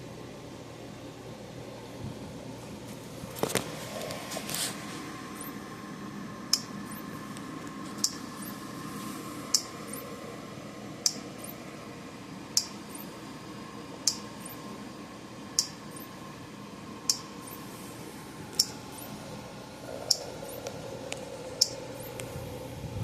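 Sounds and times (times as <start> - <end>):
faint steady hum: 0.0 - 23.0
electric fence charger clicking: 6.5 - 8.6, 9.5 - 10.1, 11.0 - 11.6, 12.5 - 13.2, 14.0 - 14.6, 15.5 - 16.1, 17.0 - 17.6, 18.5 - 19.2, 20.0 - 22.4.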